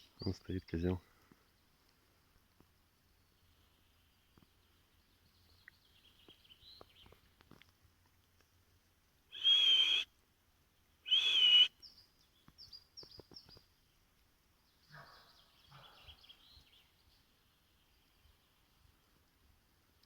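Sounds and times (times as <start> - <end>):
rough bird calls: 9.3 - 10.0, 11.1 - 11.7
high falling bird chirps: 9.3 - 10.1, 11.1 - 13.7
soft bird twittering: 9.4 - 10.0, 11.1 - 13.7.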